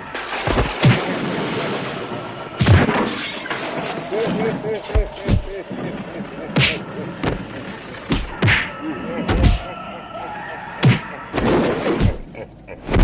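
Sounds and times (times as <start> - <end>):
heavy thuds and whacks: 0.4 - 1.1, 2.6 - 3.1, 4.9 - 5.5, 6.6 - 7.5, 8.1 - 8.7, 9.3 - 9.7, 10.8 - 13.0
voice: 3.8 - 13.0.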